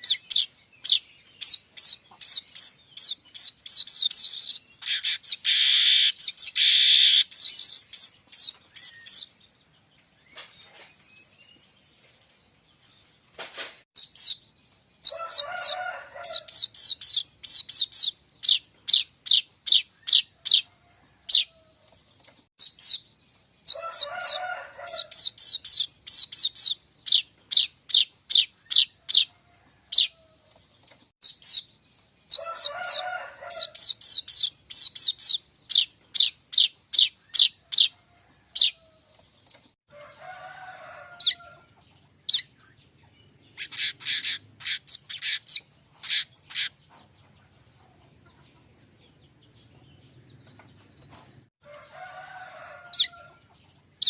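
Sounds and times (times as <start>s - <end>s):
high bird chirps: 0.0s - 11.7s, 14.0s - 20.7s, 22.2s - 29.3s, 30.8s - 38.8s, 42.1s - 46.8s.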